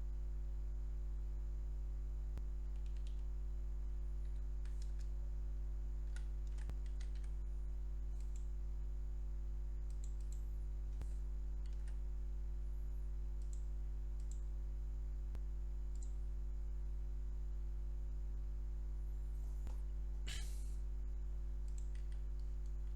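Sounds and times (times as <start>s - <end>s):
low electrical hum: 0.0s - 22.9s
computer clicks: 2.7s - 3.2s, 4.2s - 5.1s, 6.1s - 7.3s, 9.9s - 10.4s, 11.6s - 12.0s, 13.4s - 13.6s, 14.2s - 14.4s, 15.9s - 16.2s, 21.6s - 22.5s.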